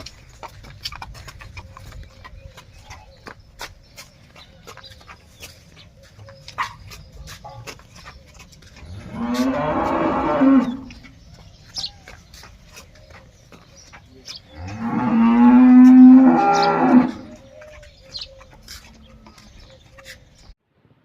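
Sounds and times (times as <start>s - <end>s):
buffalo lowing: 14.5s - 20.4s.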